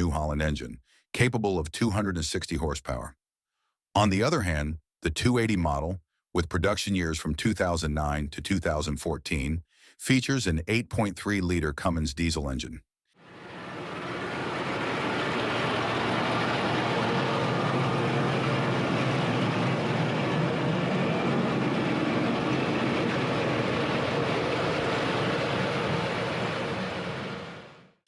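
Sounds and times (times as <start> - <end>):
tractor and harvesting machinery: 13.3 - 27.6.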